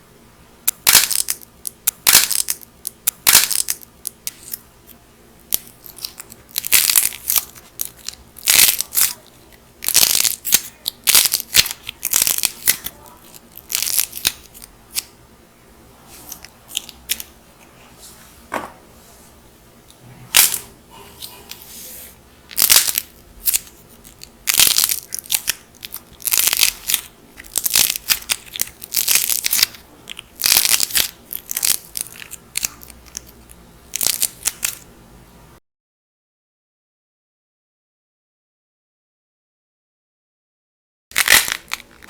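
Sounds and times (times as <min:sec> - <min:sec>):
dried clay crackling and crunching: 0:21.2 - 0:34.8.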